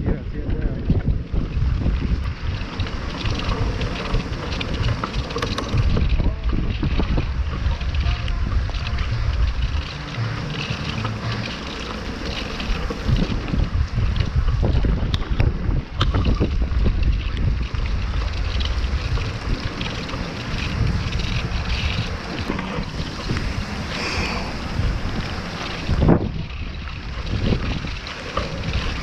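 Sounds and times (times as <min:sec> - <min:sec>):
storm wind buffeting microphone: 0:00.0 - 0:29.0
sharp knocks and clicks: 0:14.2 - 0:17.5.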